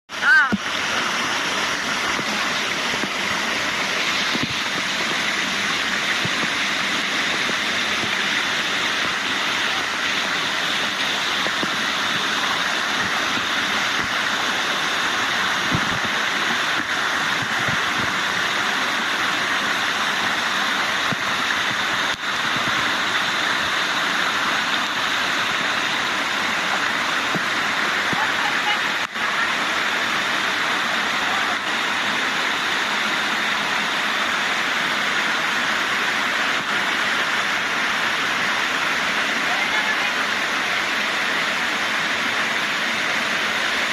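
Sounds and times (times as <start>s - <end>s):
waterfall rushing: 0.1s - 43.9s.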